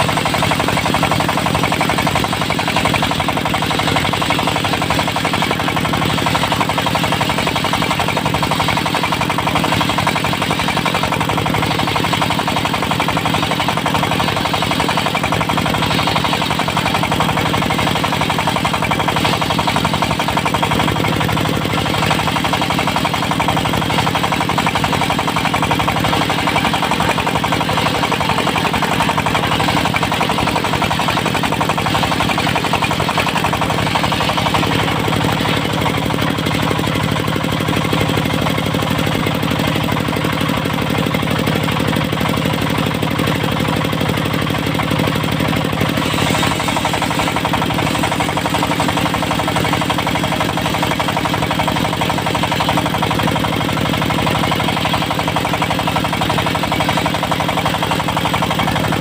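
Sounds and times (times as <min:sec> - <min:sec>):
diesel engine knocking: 0:00.0 - 0:59.0.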